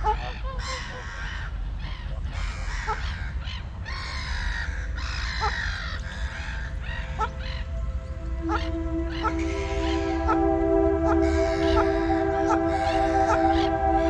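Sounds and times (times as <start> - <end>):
steady low rumble: 6.2 - 14.0.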